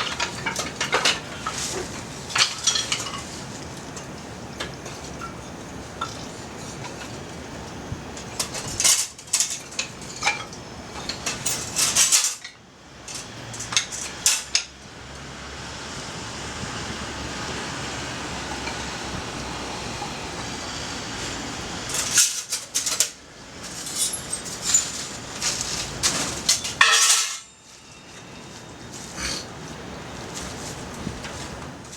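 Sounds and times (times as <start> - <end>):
metallic clinking and rattling: 0.0 - 5.4, 8.2 - 14.7, 21.9 - 29.1
wind hissing: 0.0 - 31.9
fire hissing: 27.8 - 31.9.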